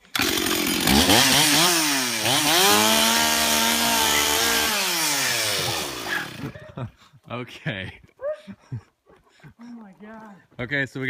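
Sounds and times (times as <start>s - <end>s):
chainsaw revving: 0.0s - 6.6s.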